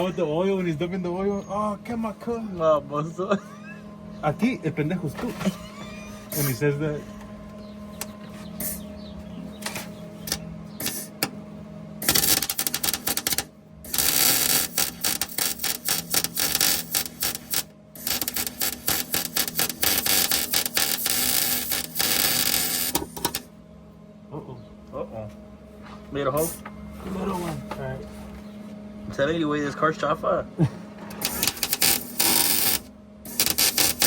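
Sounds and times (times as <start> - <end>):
welder arc crackling and sizzling: 6.3 - 6.7, 9.6 - 11.3, 12.0 - 23.5, 31.1 - 34.0.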